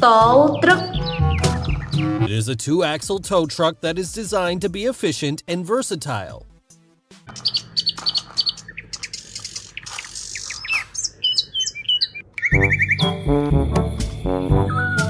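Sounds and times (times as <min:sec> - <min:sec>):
small birds chirping: 0:00.3 - 0:02.3, 0:07.3 - 0:13.4.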